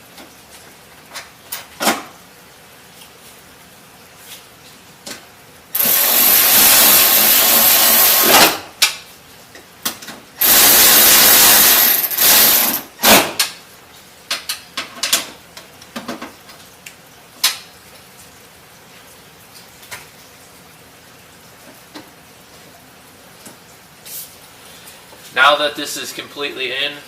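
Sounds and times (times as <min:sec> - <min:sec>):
power tool driving nuts: 0:05.8 - 0:08.7, 0:10.4 - 0:13.5.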